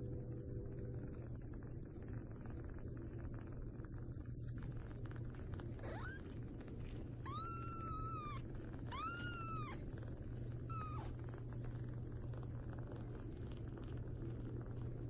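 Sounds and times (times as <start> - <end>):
cat meowing: 7.2 - 9.8.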